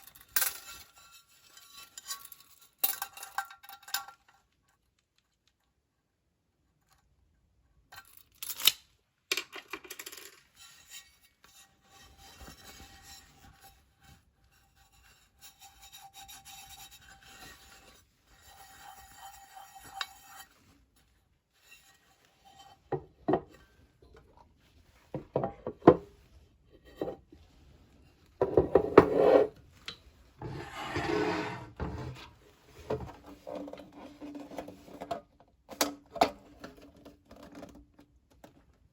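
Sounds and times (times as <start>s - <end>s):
hard objects rubbing and knocking: 22.6s - 27.6s, 28.4s - 35.1s.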